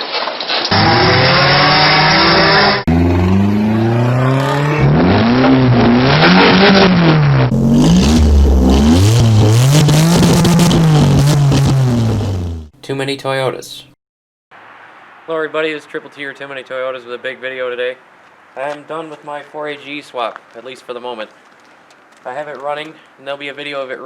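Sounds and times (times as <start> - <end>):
car engine revving: 0.7 - 12.7.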